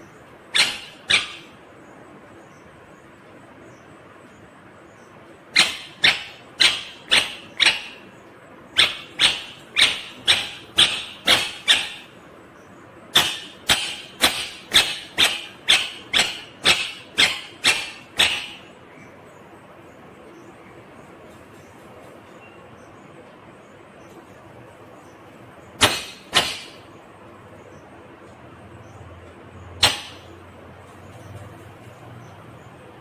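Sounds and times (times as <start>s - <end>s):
parrot calling loudly: 0.5s - 1.7s, 5.5s - 8.1s, 8.7s - 12.2s, 13.1s - 19.1s.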